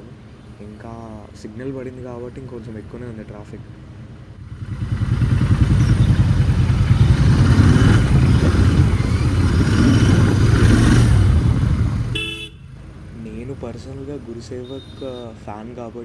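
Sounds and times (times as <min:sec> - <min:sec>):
motorcycle engine revving: 0:04.3 - 0:15.2.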